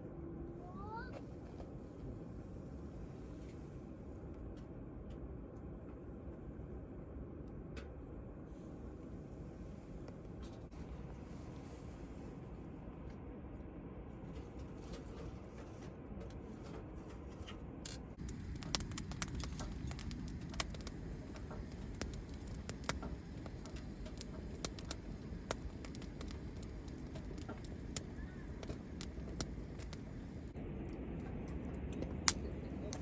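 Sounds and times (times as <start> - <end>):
low steady rumble: 0.0 - 33.0
fire pops and snaps: 17.8 - 30.6
wood fire crackling: 18.1 - 30.6.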